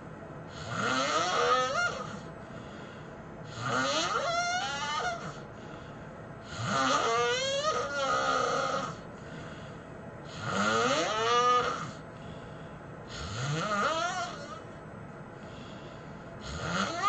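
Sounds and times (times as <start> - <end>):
person snoring heavily: 0.5 - 5.5, 6.4 - 9.6, 10.2 - 12.4, 13.1 - 14.7, 16.4 - 17.0.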